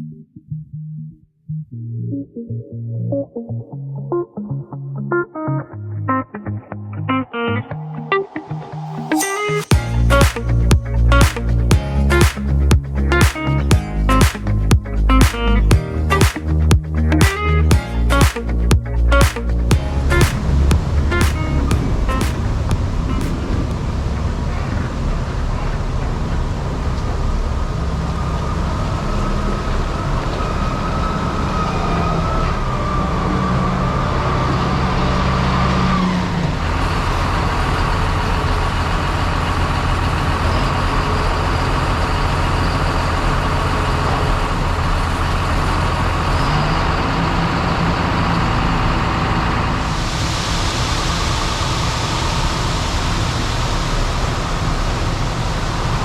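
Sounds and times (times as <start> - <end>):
combine harvester engine: 19.8 - 56.0
high machinery whine: 36.6 - 56.0
broad hiss: 49.9 - 54.0.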